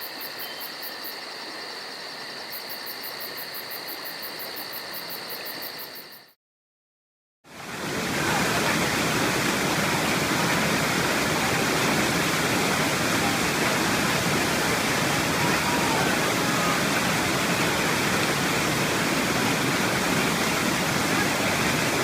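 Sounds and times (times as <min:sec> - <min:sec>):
waterfall rushing: 0:07.6 - 0:22.0.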